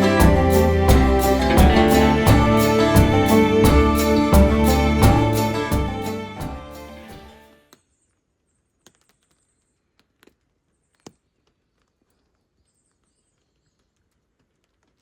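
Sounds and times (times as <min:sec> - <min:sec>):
background music: 0:00.0 - 0:07.6.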